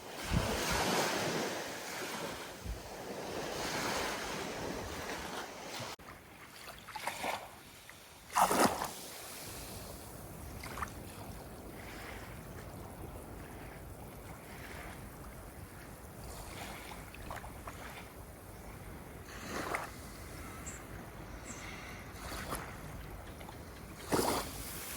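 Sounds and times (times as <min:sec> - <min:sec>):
water lapping at shore: 0:00.0 - 0:24.9
water splashes: 0:08.3 - 0:09.8, 0:10.4 - 0:11.4, 0:22.2 - 0:24.9.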